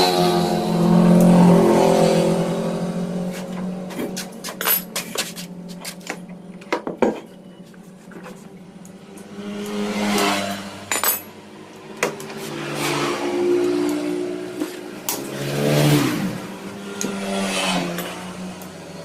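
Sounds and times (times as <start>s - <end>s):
metal tools clinking: 4.0s - 8.5s, 10.9s - 11.4s.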